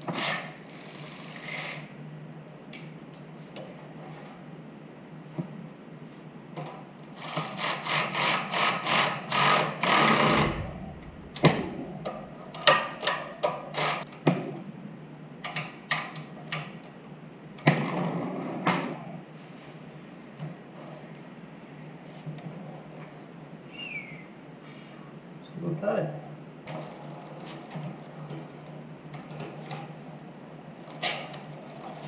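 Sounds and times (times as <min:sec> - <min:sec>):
short burst of noise: 0:10.0 - 0:13.0.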